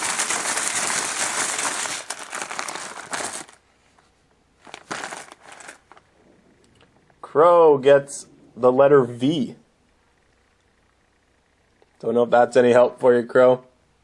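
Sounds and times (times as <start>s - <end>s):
wrapper crinkling: 0.0s - 4.0s, 4.6s - 6.1s.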